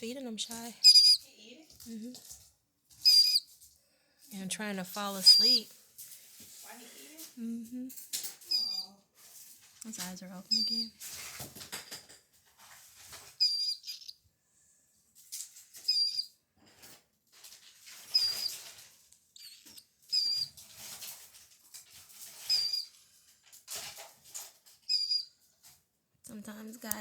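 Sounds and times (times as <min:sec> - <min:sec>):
rustling and shuffling: 0:00.0 - 0:13.4, 0:14.6 - 0:15.9, 0:16.6 - 0:26.0
chicks peeping: 0:00.5 - 0:01.2, 0:03.0 - 0:03.5, 0:05.1 - 0:05.7, 0:10.5 - 0:10.9, 0:13.4 - 0:14.2, 0:18.1 - 0:18.6.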